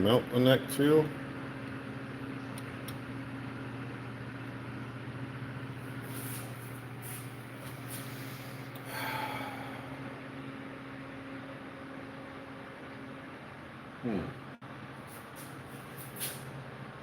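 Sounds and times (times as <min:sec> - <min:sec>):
low electrical hum: 0:00.0 - 0:17.0.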